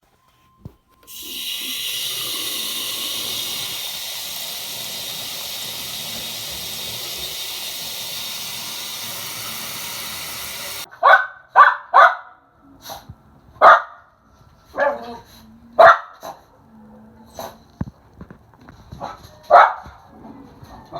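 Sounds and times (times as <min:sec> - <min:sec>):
steady hiss: 0:01.0 - 0:10.9
dog barking: 0:10.9 - 0:12.4, 0:13.6 - 0:14.0, 0:14.7 - 0:15.2, 0:15.8 - 0:16.4, 0:19.0 - 0:19.9.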